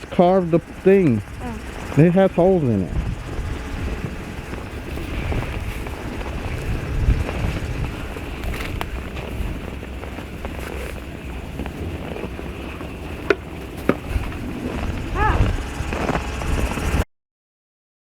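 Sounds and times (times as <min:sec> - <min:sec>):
wind buffeting microphone: 0:00.0 - 0:17.0
high-pitched vocal sound: 0:01.4 - 0:01.6, 0:15.2 - 0:15.5.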